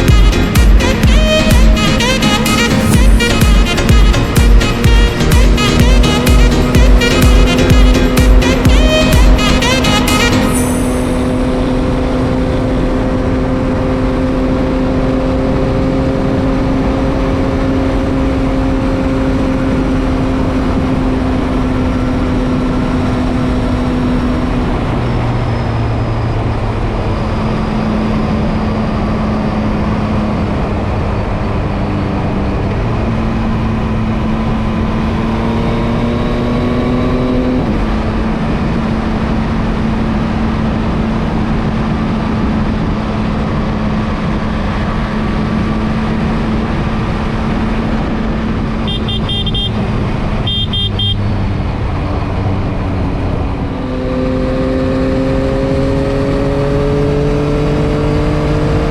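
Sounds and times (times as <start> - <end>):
motorcycle engine at speed: 0.0 - 58.9
wind noise on microphone: 14.6 - 58.9.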